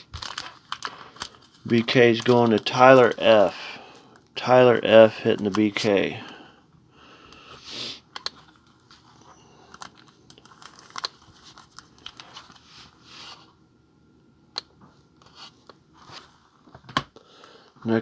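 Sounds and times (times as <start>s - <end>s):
plastic packaging crinkling: 0.0s - 6.3s, 8.2s - 13.0s.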